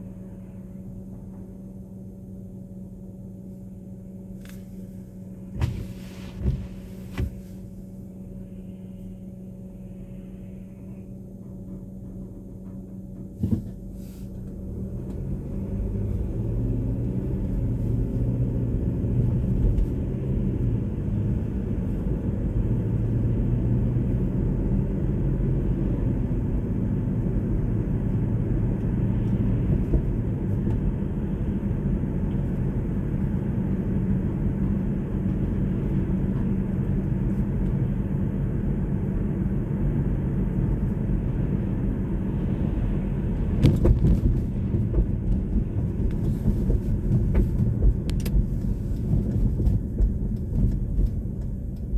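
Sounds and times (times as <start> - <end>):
car engine and road rumble: 0.0 - 51.9.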